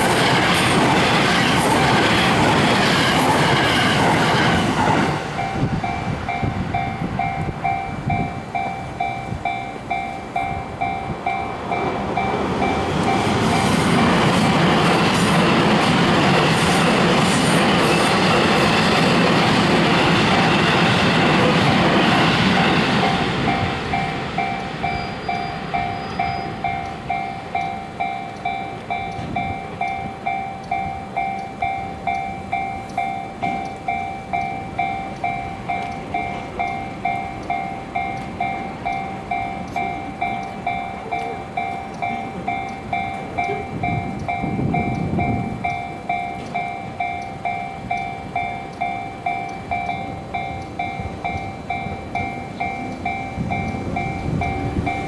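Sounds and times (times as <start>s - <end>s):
low rumble of train: 0.0s - 55.0s
railroad crossing alarm ringing: 0.0s - 55.0s.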